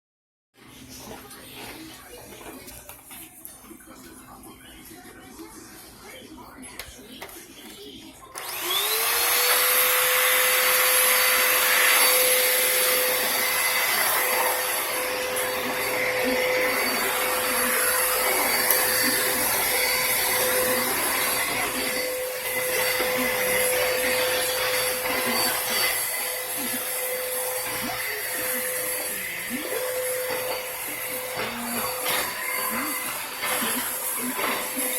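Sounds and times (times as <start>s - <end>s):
vacuum cleaner running: 8.3s - 34.9s.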